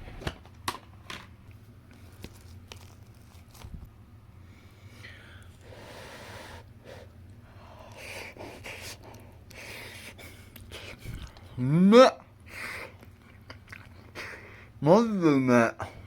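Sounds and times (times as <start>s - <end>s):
steady low hum: 0.0s - 16.0s
soft rustling: 1.6s - 3.9s.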